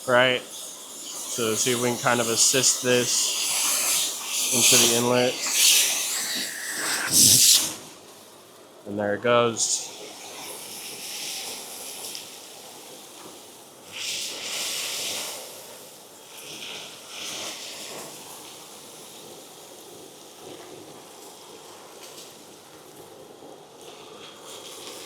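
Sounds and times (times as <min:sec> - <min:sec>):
vacuum blower hissing: 0:00.0 - 0:08.2
metal chips sucked up: 0:01.3 - 0:07.8.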